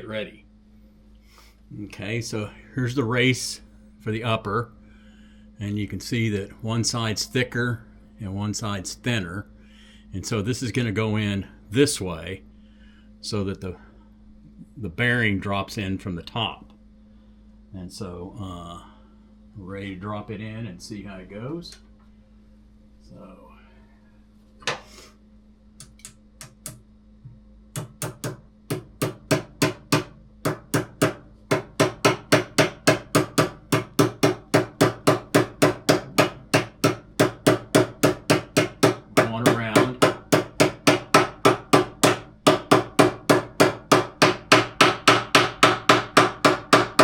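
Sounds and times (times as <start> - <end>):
hammer striking metal: 27.8 - 47.0.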